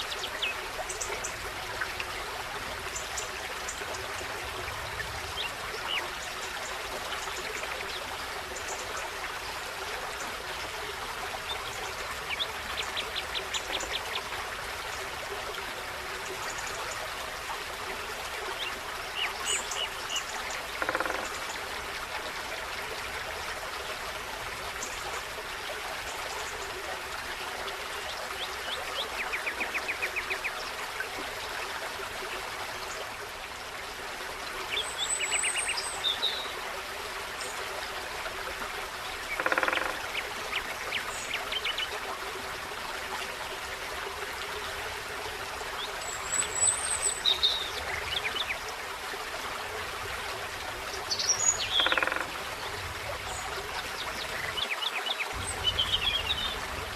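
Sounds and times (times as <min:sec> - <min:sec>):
stream running: 0:00.0 - 0:56.9
songbirds calling: 0:18.6 - 0:21.5, 0:39.2 - 0:41.9, 0:50.9 - 0:56.9.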